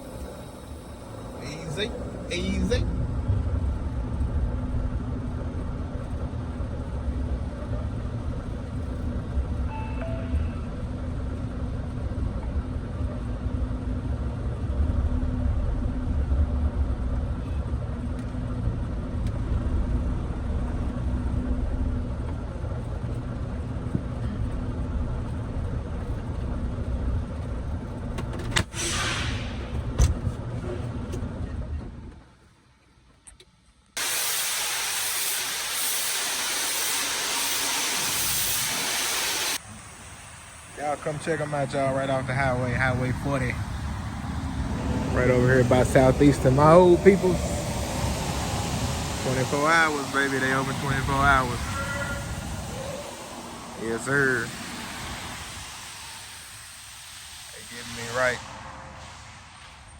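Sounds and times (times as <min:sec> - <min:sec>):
diesel engine rumbling: 0:00.0 - 0:33.9, 0:37.8 - 0:59.9
air brake hiss: 0:28.7 - 0:29.8, 0:34.0 - 0:40.5, 0:50.7 - 0:59.9.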